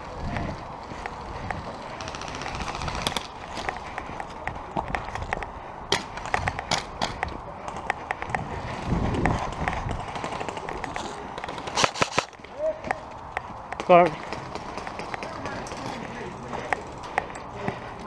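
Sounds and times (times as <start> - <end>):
running footsteps: 0.0 - 18.0
airsoft guns firing: 1.8 - 3.5, 11.4 - 12.3.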